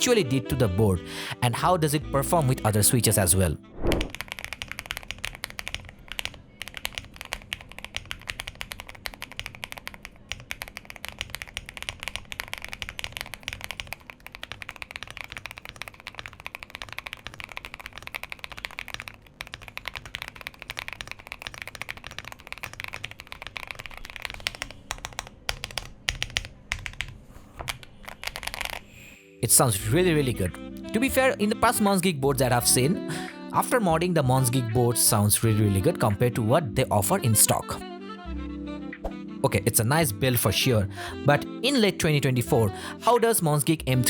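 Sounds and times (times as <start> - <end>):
mechanical keyboard typing: 3.9 - 29.0.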